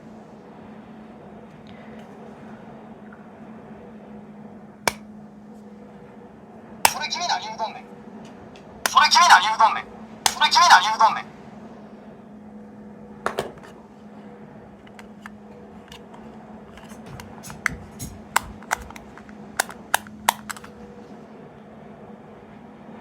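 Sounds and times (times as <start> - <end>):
faint steady hum: 0.0 - 23.0
plastic toy clicks and taps: 16.8 - 20.7.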